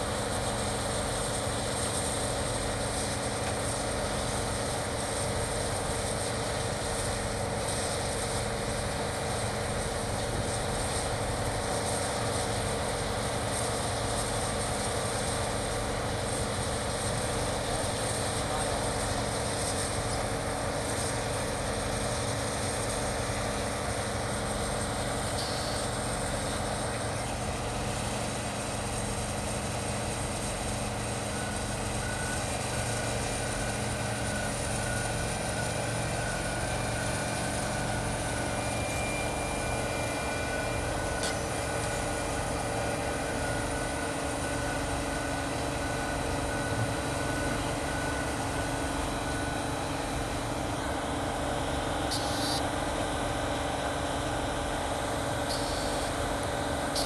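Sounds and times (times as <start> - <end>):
wood chipper running: 0.0 - 57.0
faint high whine: 23.6 - 28.7, 31.2 - 53.0, 55.3 - 57.0.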